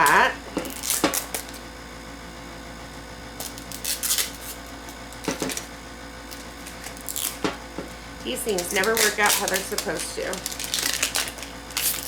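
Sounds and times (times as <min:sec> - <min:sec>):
packaging being torn open: 0:00.6 - 0:01.6, 0:03.4 - 0:05.7, 0:06.3 - 0:07.4, 0:08.5 - 0:12.0.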